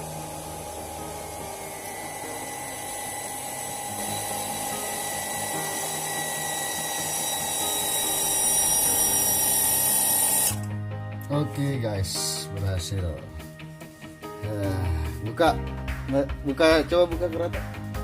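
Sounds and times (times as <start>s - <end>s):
electric water pump motor whine: 0.0s - 10.8s
faint background music: 0.0s - 18.0s.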